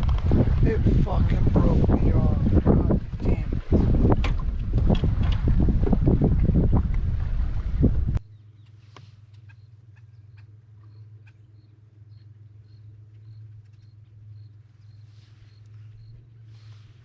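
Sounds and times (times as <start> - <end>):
steady low hum: 0.0 - 17.0
bird chirping: 8.2 - 17.0.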